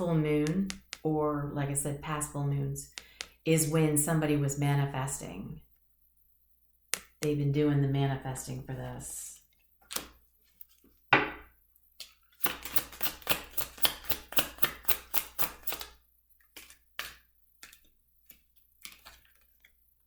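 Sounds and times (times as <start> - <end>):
cards being shuffled: 9.5 - 10.9, 12.0 - 19.8.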